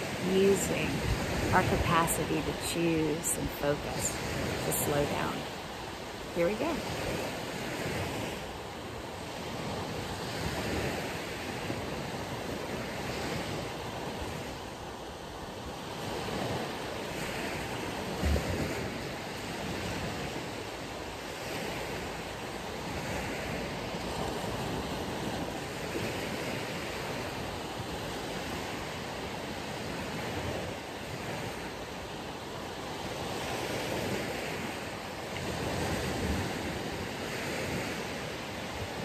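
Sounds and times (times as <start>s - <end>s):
wind across microphone: 0.0s - 14.8s
ocean waves on beach: 0.0s - 39.0s.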